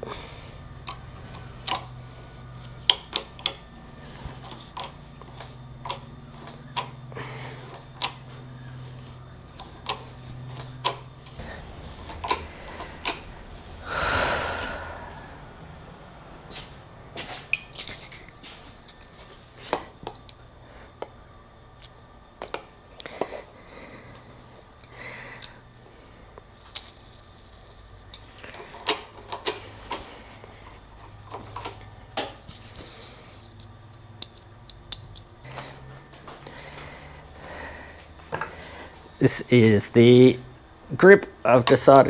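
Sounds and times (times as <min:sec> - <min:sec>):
low steady hum: 0:00.0 - 0:42.0
clicks and taps of tools: 0:21.8 - 0:23.4, 0:33.5 - 0:35.4.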